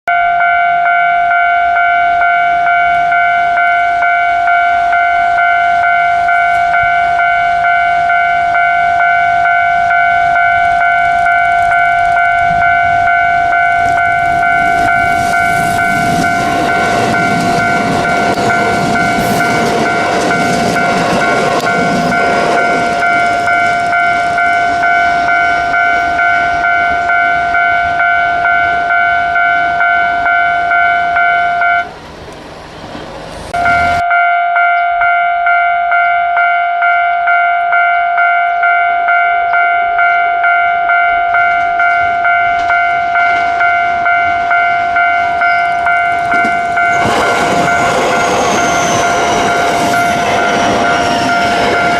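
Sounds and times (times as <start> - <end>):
level crossing warning bell: 0.1 - 32.0, 33.5 - 51.9
electric train passing: 0.2 - 51.9.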